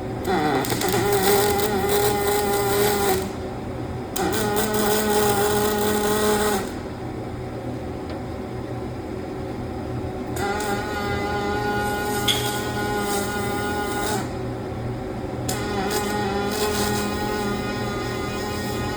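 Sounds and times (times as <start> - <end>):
electric arc welding crackling: 0.2 - 3.4, 4.2 - 6.8, 10.4 - 14.4, 15.5 - 18.9.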